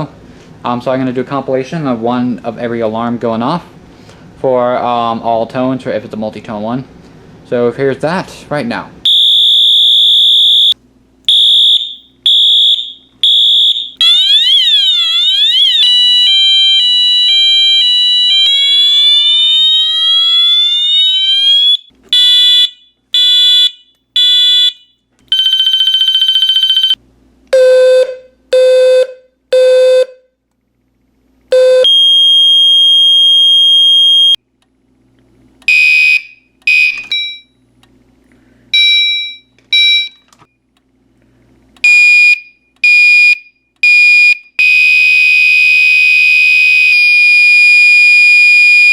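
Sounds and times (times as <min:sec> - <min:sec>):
fire alarm horn pulsing: 0:09.0 - 0:27.0, 0:31.5 - 0:34.4, 0:35.7 - 0:37.4, 0:41.8 - 0:48.9
siren sweeping down and up: 0:09.1 - 0:22.4, 0:25.4 - 0:27.0, 0:44.6 - 0:48.9
alarm blasts in groups: 0:09.1 - 0:27.0, 0:35.7 - 0:37.4, 0:41.8 - 0:48.9
steady alarm tone: 0:09.1 - 0:27.0, 0:41.8 - 0:48.9
two-tone hi-lo alarm: 0:09.1 - 0:27.0, 0:41.9 - 0:48.9.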